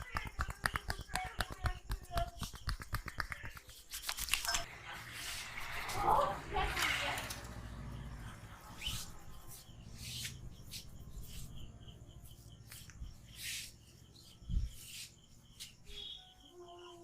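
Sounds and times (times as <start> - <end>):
hands rubbing oiled hair: 0.0 - 6.2
birds chirping faintly: 0.0 - 17.0.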